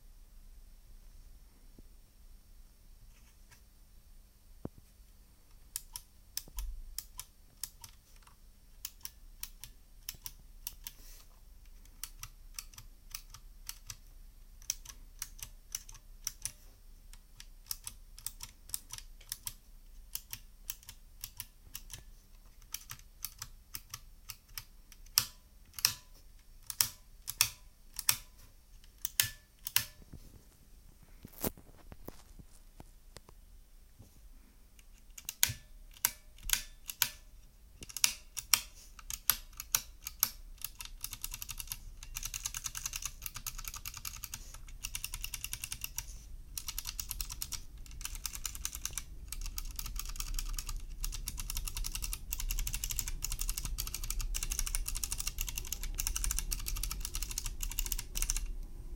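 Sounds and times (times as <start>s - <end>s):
clicky mechanical keyboard typing: 5.8s - 11.0s, 11.7s - 16.6s, 17.2s - 28.3s, 34.9s - 37.2s, 37.8s - 58.7s.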